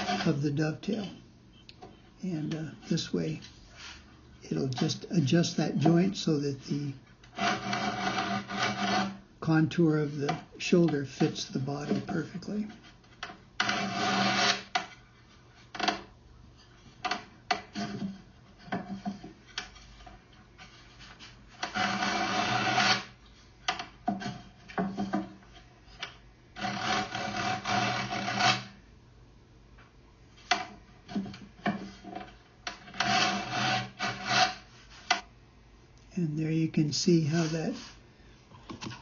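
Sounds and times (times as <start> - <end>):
sandpaper rasping on wood: 33.0 - 35.1.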